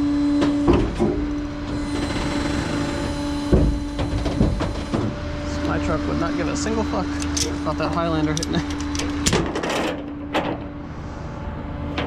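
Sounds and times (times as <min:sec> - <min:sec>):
truck engine humming: 0:00.0 - 0:12.0
knocks and clunks: 0:00.4 - 0:05.7, 0:07.2 - 0:10.7.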